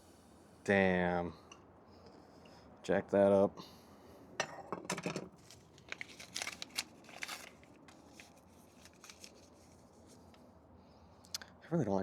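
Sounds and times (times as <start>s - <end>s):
paper rustling and crinkling: 5.3s - 10.3s.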